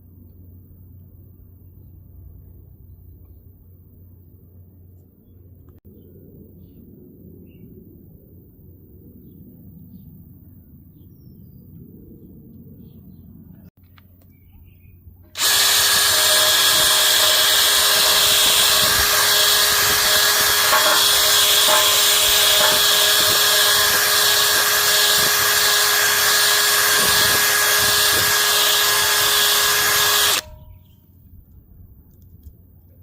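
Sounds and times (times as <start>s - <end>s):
wire brush scrubbing metal: 15.4s - 30.6s
power drill motor whine: 15.4s - 30.9s.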